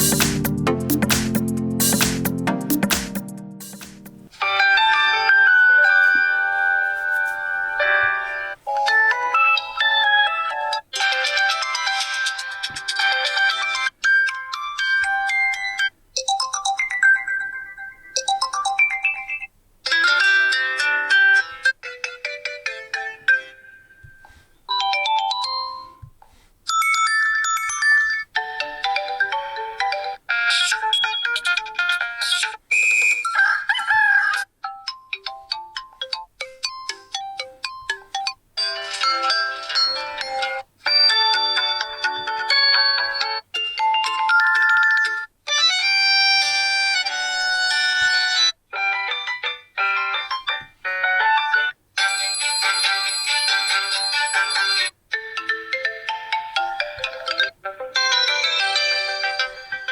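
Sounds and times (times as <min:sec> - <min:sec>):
electronic phone ringtone melodies: 0:04.4 - 0:26.1, 0:26.7 - 0:32.0, 0:34.6 - 0:59.9.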